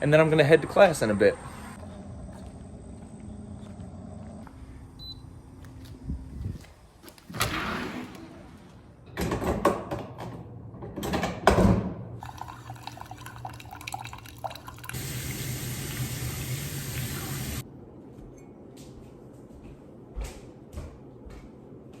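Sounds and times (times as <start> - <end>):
coffee machine pouring with hum: 12.2 - 17.6.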